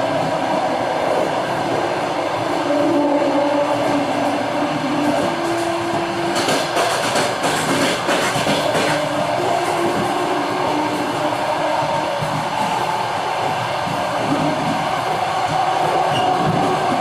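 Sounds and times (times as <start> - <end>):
train howling whine: 0.0 - 17.0.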